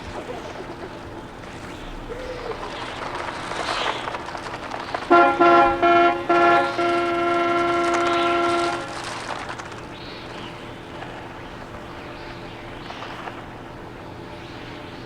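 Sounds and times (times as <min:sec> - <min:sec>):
rough noisy film sound: 0:00.0 - 0:15.0
car horn honking: 0:05.1 - 0:09.5.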